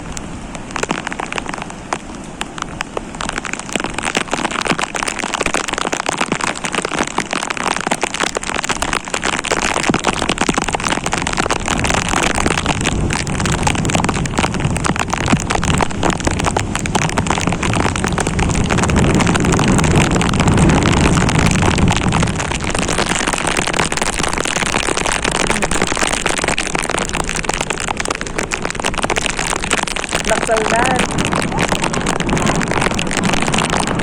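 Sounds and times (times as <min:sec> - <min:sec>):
heavy rain falling: 0:00.0 - 0:34.0
low rumble: 0:11.2 - 0:34.0.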